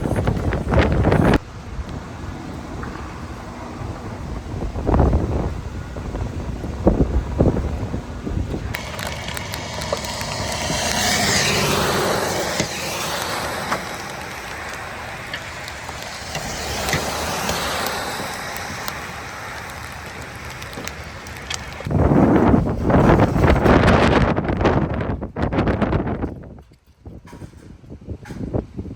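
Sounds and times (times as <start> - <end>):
wind buffeting microphone: 0.0 - 28.9
hail and rain on road: 8.7 - 21.9
hailstones clicking: 8.7 - 21.9.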